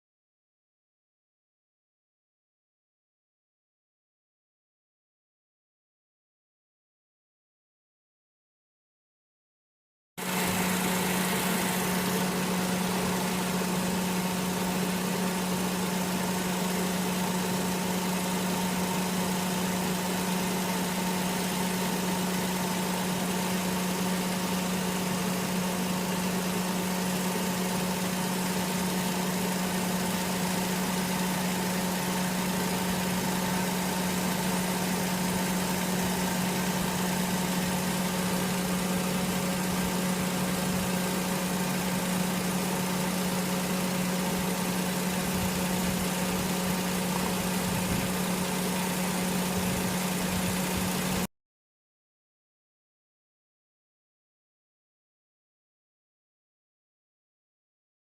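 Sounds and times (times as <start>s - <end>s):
car engine idling: 10.2s - 51.3s.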